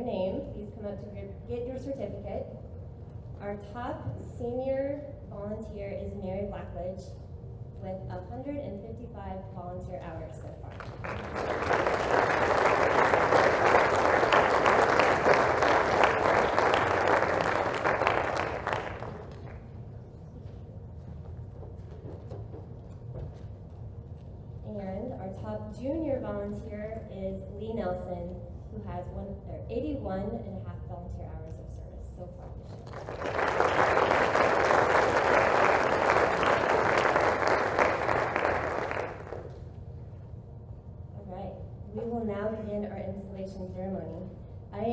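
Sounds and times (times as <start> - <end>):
audience applauding: 10.7 - 19.7, 32.7 - 39.6.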